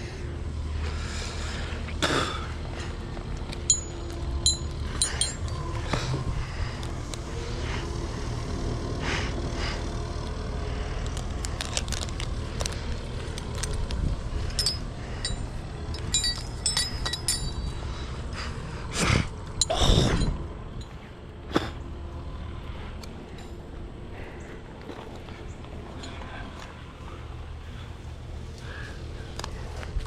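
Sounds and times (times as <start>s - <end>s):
light clinks: 3.4s - 5.9s, 13.3s - 17.9s.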